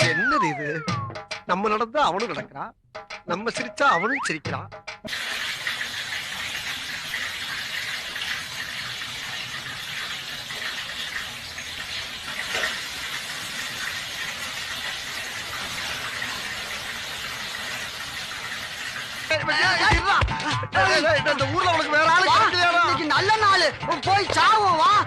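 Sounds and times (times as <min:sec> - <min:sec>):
running water rushing: 0:05.1 - 0:20.2.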